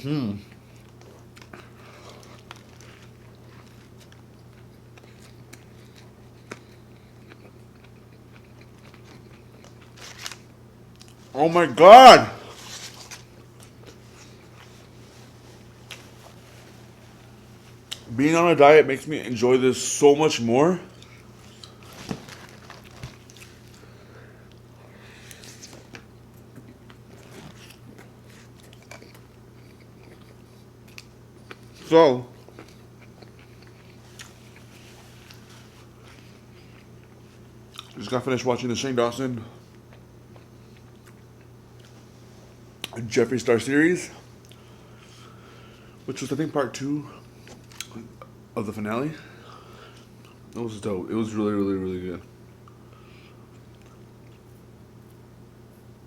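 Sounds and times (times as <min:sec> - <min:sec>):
steady low hum: 0:00.0 - 0:56.0
person chewing food: 0:00.4 - 0:11.2, 0:12.6 - 0:18.1, 0:20.9 - 0:38.0, 0:39.7 - 0:42.0, 0:44.4 - 0:45.9, 0:47.2 - 0:48.3, 0:52.6 - 0:54.6.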